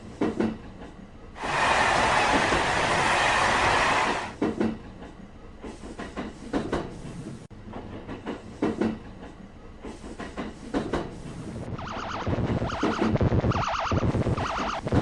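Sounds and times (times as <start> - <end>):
train wheels clacking over rail joints: 0.1 - 11.2.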